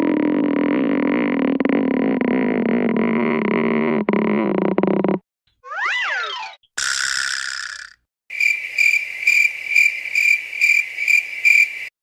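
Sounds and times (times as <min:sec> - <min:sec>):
cricket chirping: 0:08.3 - 0:11.9.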